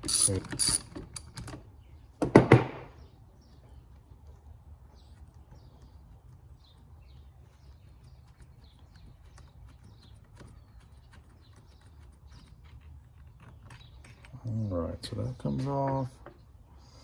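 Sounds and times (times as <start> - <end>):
faint bird chirping: 2.9 - 17.0.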